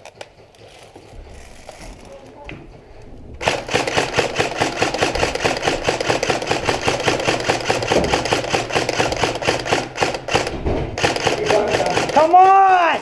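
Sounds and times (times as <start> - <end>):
rapid ratcheting clicks: 3.4 - 12.6.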